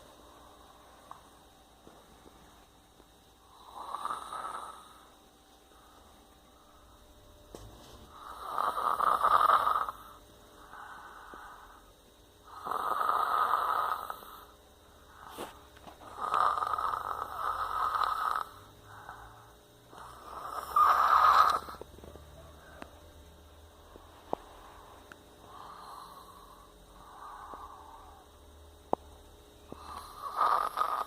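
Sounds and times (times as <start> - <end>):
person snoring: 3.4 - 5.2, 8.1 - 14.5, 15.1 - 22.9, 23.8 - 28.3, 29.7 - 31.0.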